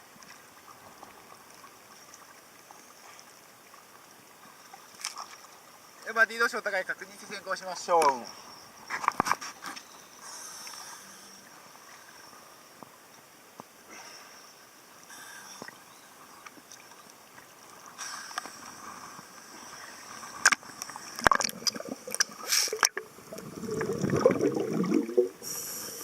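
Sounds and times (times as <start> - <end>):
water sloshing around boat: 0.0 - 25.4
splashing and gurgling: 16.6 - 25.6.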